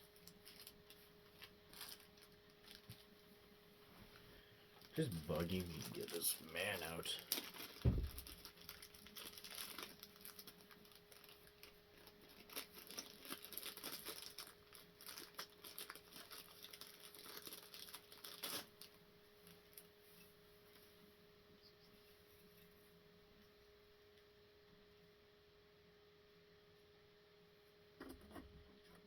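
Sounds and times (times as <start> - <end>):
faint steady hum: 0.0 - 29.0
packaging rustling and clicking: 0.2 - 3.1, 7.2 - 19.9.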